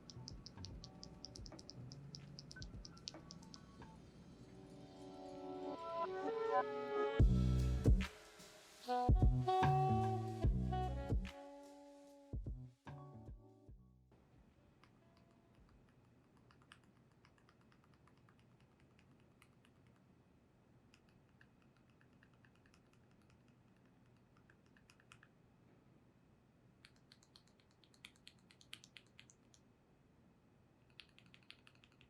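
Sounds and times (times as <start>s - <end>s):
mechanical keyboard typing: 30.9s - 32.0s.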